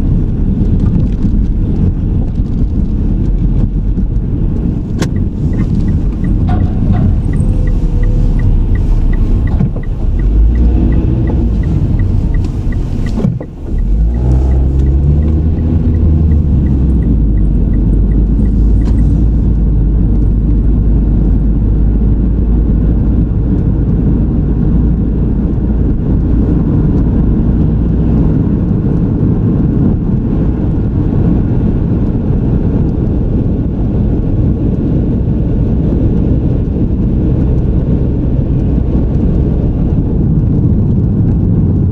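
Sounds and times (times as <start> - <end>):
car engine and road rumble: 0.0 - 41.9
fast light ticking: 5.0 - 19.6.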